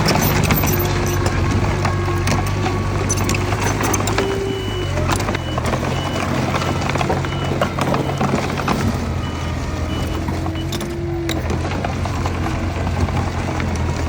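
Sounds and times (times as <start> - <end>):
metal clanks: 0.0 - 4.4
reversing alarm beeping: 0.0 - 11.4
diesel machinery running: 0.0 - 14.0.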